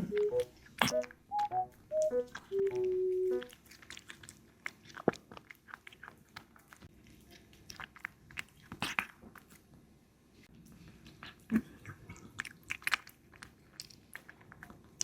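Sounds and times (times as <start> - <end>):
electronic beep tone: 0.0 - 3.4
kitten chewing raw meat: 1.9 - 15.0.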